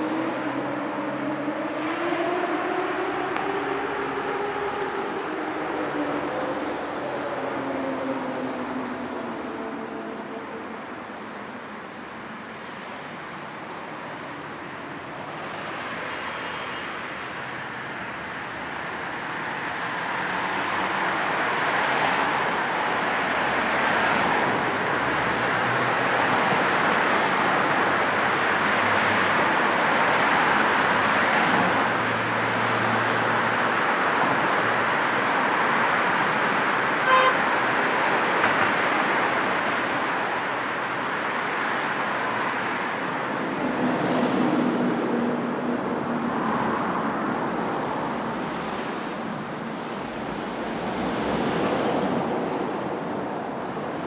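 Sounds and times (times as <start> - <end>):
cars passing: 0.0 - 54.0
car horn toot: 37.0 - 37.5.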